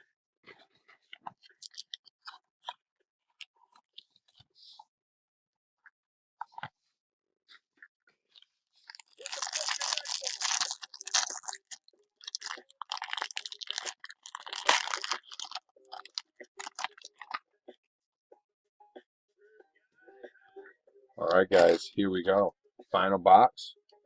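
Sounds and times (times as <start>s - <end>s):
plastic wrapping crinkling and tearing: 8.8s - 17.4s.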